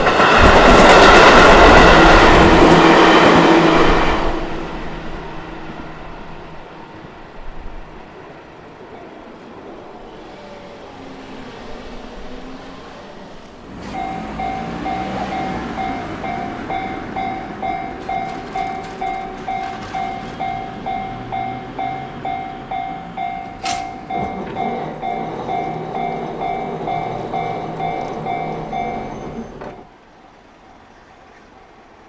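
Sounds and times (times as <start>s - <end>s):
train passing: 0.0s - 32.0s
level crossing warning bell: 13.7s - 29.9s.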